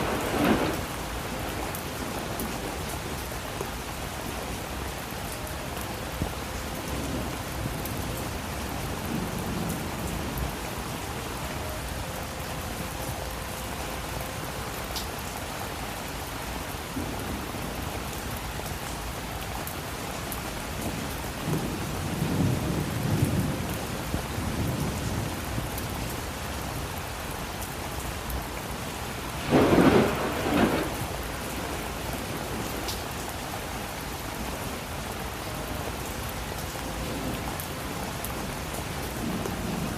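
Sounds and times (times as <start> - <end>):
sharp thunderclap: 0.0 - 0.8, 29.4 - 31.1
thunder rumbling: 0.0 - 3.2, 20.8 - 26.1, 29.2 - 33.0
steady rain falling: 0.0 - 39.9.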